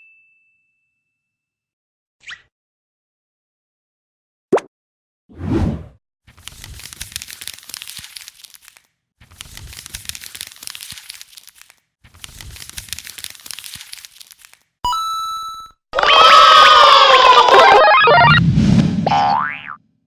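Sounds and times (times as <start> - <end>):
crackly crinkling and tearing: 6.3 - 14.8.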